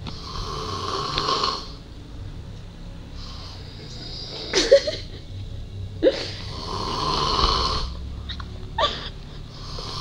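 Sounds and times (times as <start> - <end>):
man snoring: 0.1 - 1.8, 6.4 - 8.0, 9.6 - 10.0.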